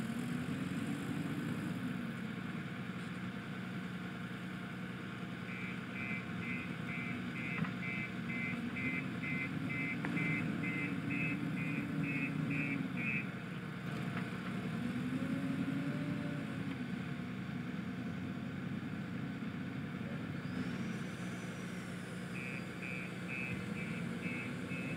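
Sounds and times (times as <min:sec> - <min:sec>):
diesel engine running: 0:00.0 - 0:24.9
reversing alarm beeping: 0:05.5 - 0:13.3, 0:22.3 - 0:24.9.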